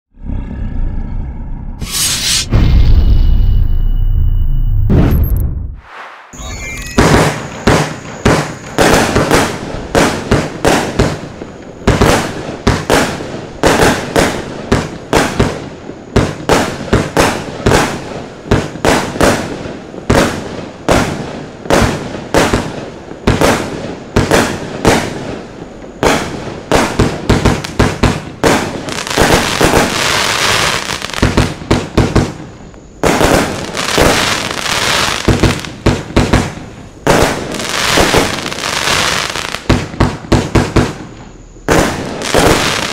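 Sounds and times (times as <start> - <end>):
dense firework crackling: 7.0 - 42.9
firework battery firing shots: 7.0 - 42.9.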